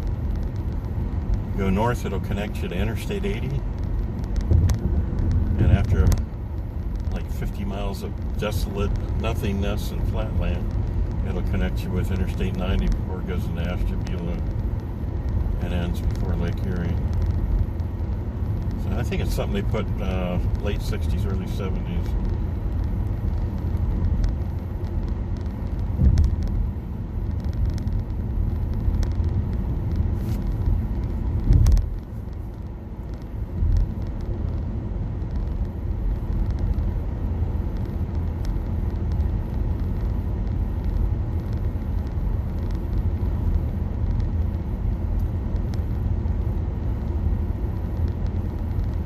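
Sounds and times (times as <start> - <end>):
road and tyre noise in car: 0.0 - 49.0.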